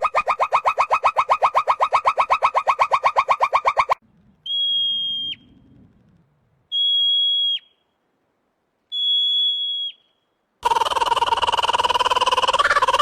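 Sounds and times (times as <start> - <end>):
rapid pulsing animal call: 0.0 - 5.4, 10.6 - 13.0
high whistled animal notes: 0.0 - 5.6, 8.9 - 13.0.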